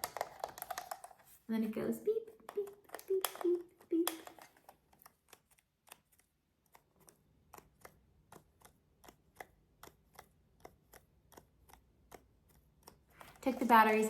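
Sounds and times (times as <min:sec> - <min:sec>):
toy barcode scanner clicks: 0:02.5 - 0:04.6.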